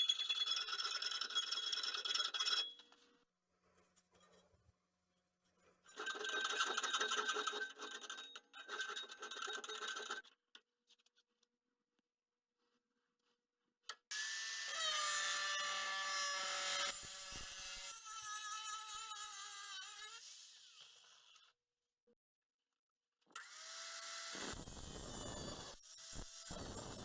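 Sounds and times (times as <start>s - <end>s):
saw scraping steel: 14.2s - 21.4s.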